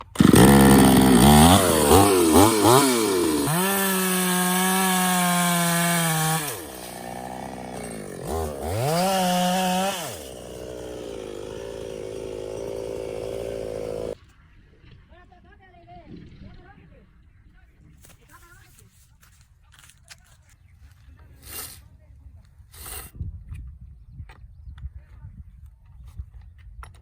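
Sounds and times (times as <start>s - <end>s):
chainsaw engine revving and idling: 0.0s - 14.2s.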